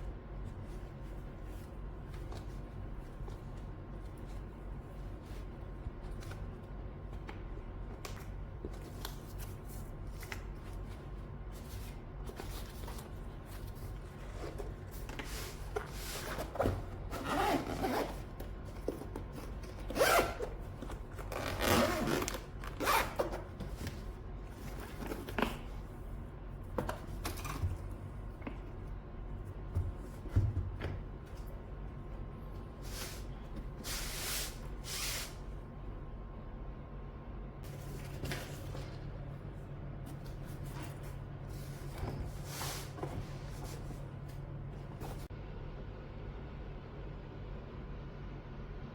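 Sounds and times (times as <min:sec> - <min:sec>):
zipper pulled on case: 0:21.3 - 0:23.2.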